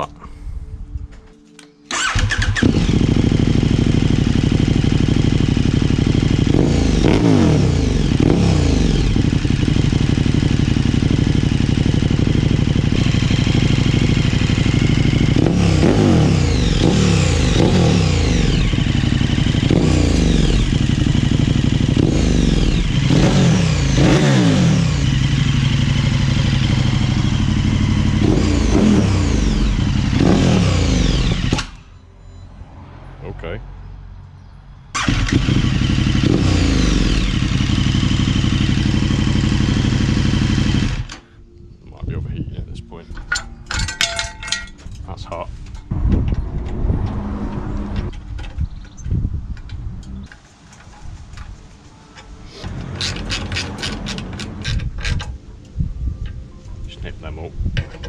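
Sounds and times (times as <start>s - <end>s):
motorcycle engine revving: 1.9s - 32.0s, 34.9s - 41.3s, 45.9s - 50.4s, 52.5s - 55.4s.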